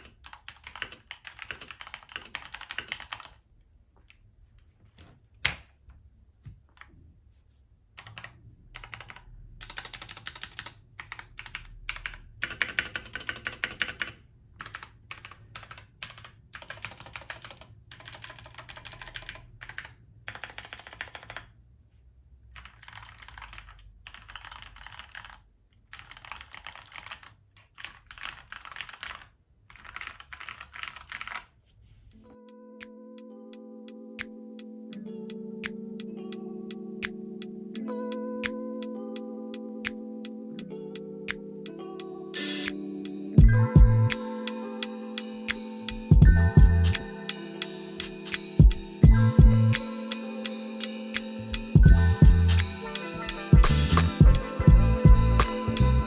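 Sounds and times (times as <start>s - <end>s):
mechanical keyboard typing: 0.0s - 3.4s, 8.0s - 21.6s, 22.5s - 31.6s.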